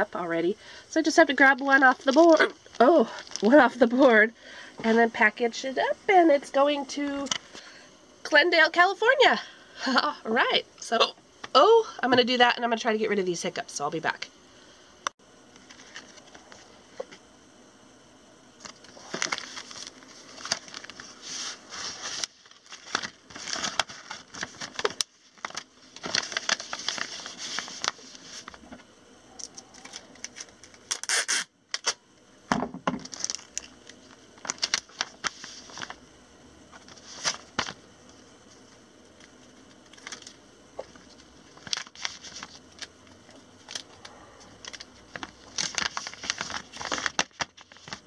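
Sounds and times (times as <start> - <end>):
packaging rustling and crinkling: 1.4 - 3.8, 18.6 - 28.7, 33.0 - 36.0, 36.7 - 37.8, 39.2 - 42.9, 43.6 - 48.0.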